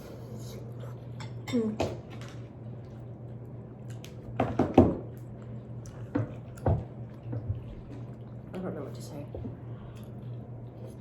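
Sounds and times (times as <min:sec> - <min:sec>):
steady low hum: 0:00.0 - 0:11.0
person chewing food: 0:05.1 - 0:08.4, 0:09.6 - 0:11.0.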